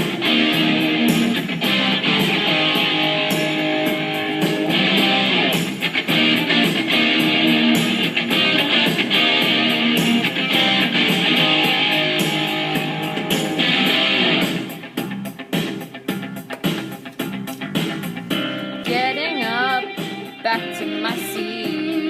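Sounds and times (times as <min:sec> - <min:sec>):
instrumental guitar music: 0:00.0 - 0:22.0.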